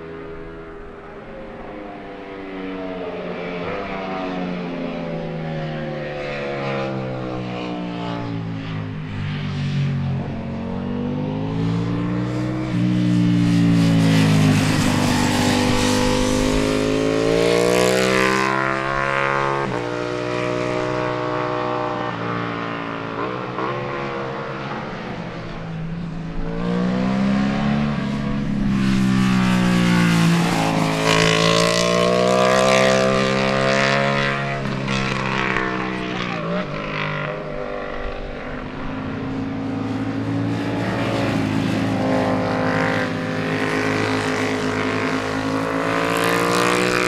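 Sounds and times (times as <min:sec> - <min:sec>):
motorcycle engines revving hard: 0:10.8 - 0:24.7, 0:29.6 - 0:47.0.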